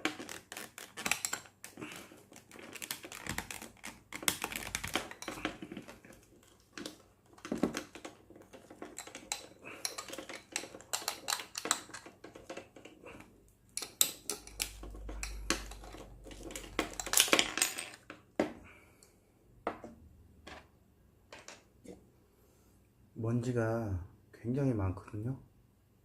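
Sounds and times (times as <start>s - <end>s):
plastic housing clicks and rattles: 0.0s - 12.9s, 13.8s - 18.2s.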